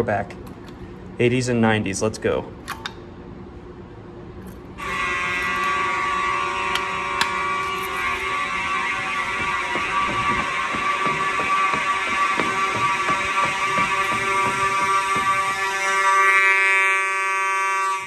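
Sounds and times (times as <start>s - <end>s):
fire alarm horn: 4.8s - 18.0s.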